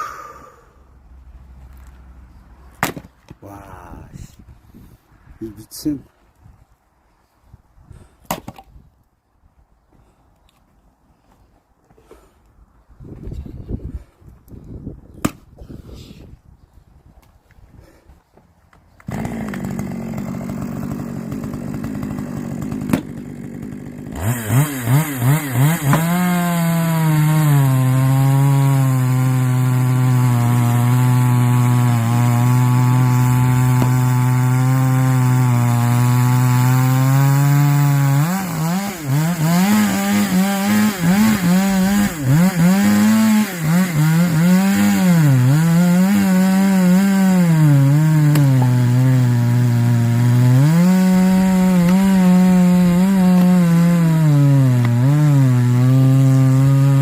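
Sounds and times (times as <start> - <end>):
chainsaw cutting wood: 18.8 - 57.0.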